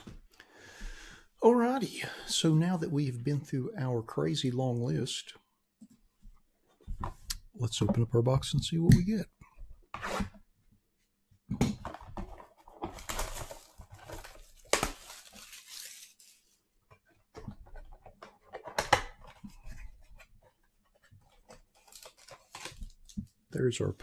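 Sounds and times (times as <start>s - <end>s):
cardboard packaging ripping: 12.6s - 16.6s, 21.7s - 23.2s
plastic wrapping tearing: 12.9s - 16.6s, 21.7s - 23.2s.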